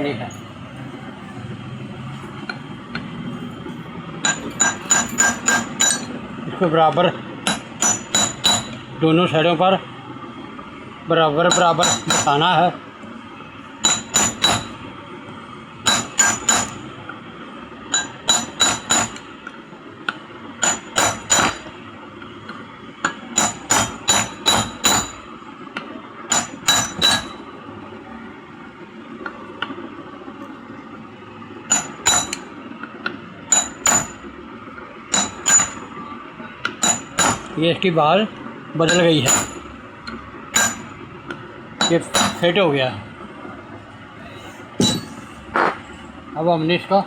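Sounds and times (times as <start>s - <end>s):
hammer tapping on metal: 4.2s - 6.1s, 7.4s - 8.8s, 11.5s - 12.4s, 13.8s - 14.8s, 15.9s - 16.8s, 17.9s - 19.2s, 20.6s - 21.7s, 23.0s - 25.2s, 26.3s - 27.4s, 31.7s - 32.4s, 33.5s - 34.2s, 35.1s - 35.8s, 36.6s - 37.5s, 38.9s - 40.9s, 41.8s - 42.4s.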